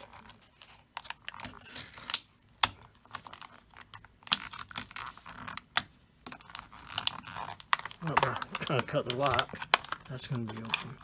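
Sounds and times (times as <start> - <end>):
knife cutting plastic packaging: 0.0 - 11.0
plastic snapping: 1.0 - 11.0.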